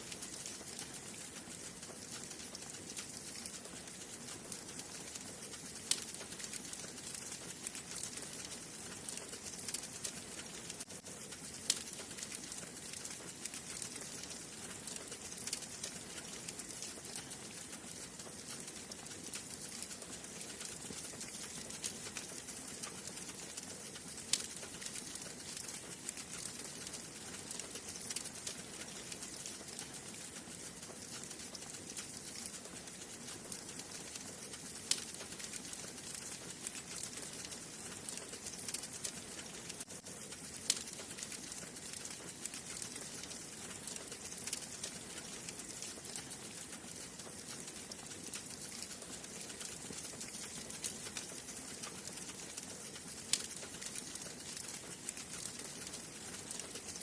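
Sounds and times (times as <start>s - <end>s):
wood fire crackling: 0.0s - 57.0s.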